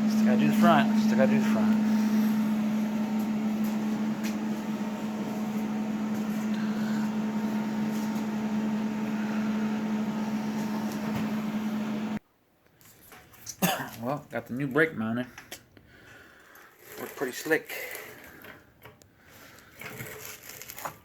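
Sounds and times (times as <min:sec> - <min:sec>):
mechanical hum: 0:00.0 - 0:12.2.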